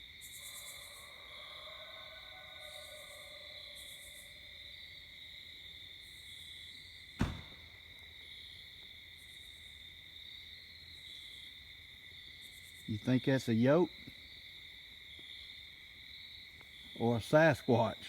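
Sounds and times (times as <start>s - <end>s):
crickets trilling: 0.0s - 18.0s
sharp knock: 7.2s - 7.7s.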